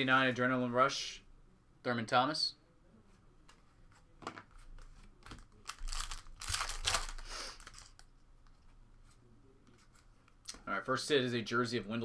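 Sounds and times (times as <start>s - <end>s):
cards rustling: 4.6s - 10.4s
wrapper crinkling and tearing: 5.4s - 8.1s.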